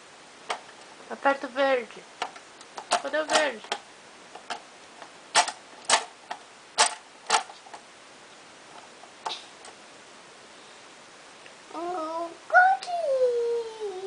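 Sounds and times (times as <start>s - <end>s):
plastic toy buttons clicking: 2.2s - 3.8s, 5.4s - 7.5s.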